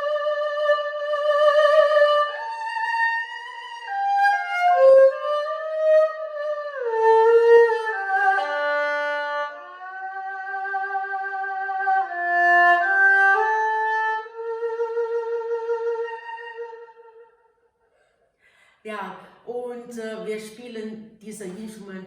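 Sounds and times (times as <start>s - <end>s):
bowed fiddle playing solo: 0.0s - 17.3s.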